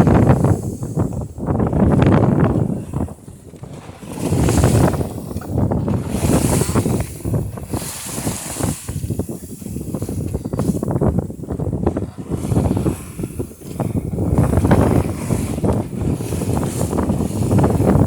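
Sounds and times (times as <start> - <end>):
choppy water: 0.0 - 18.0
waves splashing against hull: 0.0 - 18.0
wind buffeting microphone: 0.0 - 18.0.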